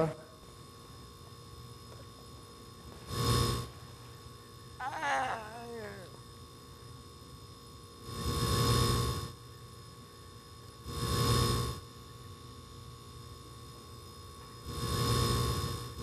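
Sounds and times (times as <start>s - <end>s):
thin high whine: 0.0s - 6.2s.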